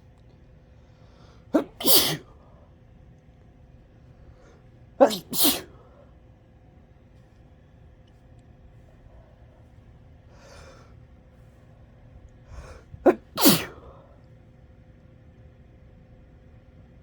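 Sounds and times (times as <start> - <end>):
person sneezing: 1.5 - 2.4, 5.0 - 5.9, 12.6 - 14.1
person breathing in: 12.5 - 13.0.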